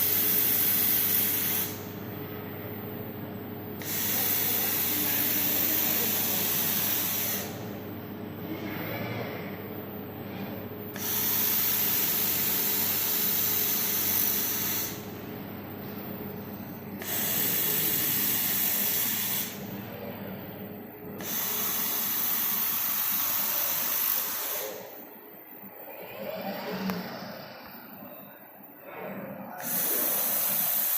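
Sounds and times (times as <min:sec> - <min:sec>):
robotic welder hissing: 0:00.0 - 0:01.8, 0:03.8 - 0:07.6, 0:11.0 - 0:15.0, 0:17.0 - 0:19.6, 0:21.2 - 0:25.0, 0:29.5 - 0:30.9
machine hum: 0:00.0 - 0:30.9.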